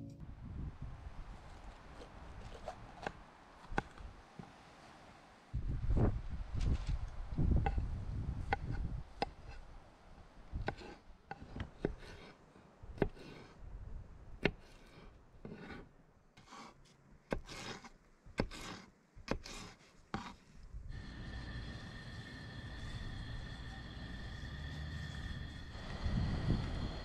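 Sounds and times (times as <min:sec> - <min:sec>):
scrapes on wood: 0:14.6 - 0:20.5.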